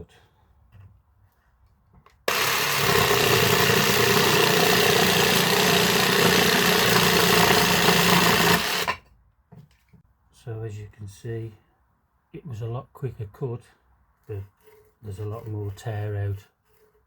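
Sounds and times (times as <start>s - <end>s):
jigsaw cutting wood: 2.3s - 9.0s.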